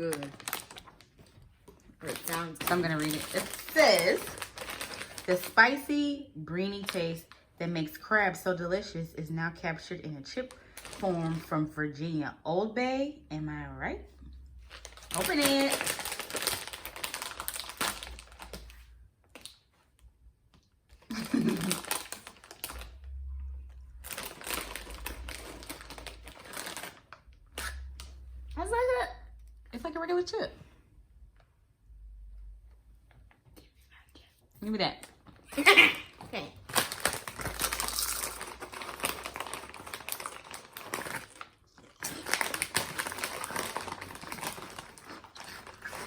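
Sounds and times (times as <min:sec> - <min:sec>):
chip bag crinkling: 0:00.0 - 0:05.9, 0:10.5 - 0:11.5, 0:14.6 - 0:19.6, 0:21.0 - 0:23.2, 0:23.9 - 0:28.2, 0:35.5 - 0:46.0
potato chips crunching: 0:14.7 - 0:19.6, 0:21.1 - 0:23.1, 0:23.9 - 0:28.2, 0:35.5 - 0:46.0.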